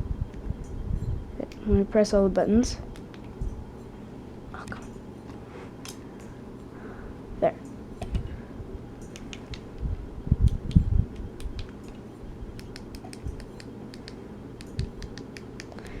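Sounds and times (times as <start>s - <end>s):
radio buttons clicking: 12.6s - 16.0s.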